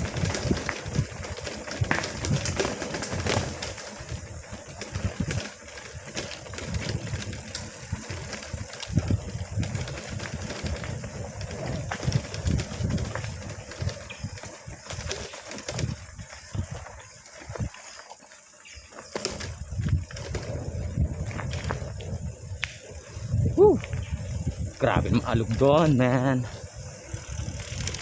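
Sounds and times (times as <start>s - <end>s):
wind buffeting microphone: 0.0s - 17.8s, 19.2s - 28.0s
mountain bike rattling over trail: 0.0s - 28.0s.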